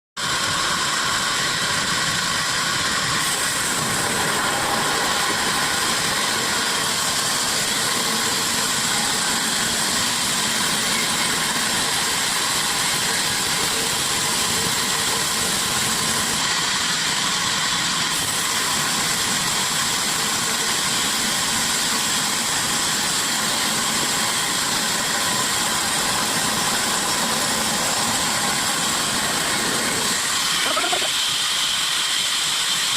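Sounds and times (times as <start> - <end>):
sawmill running: 0.2 - 32.9.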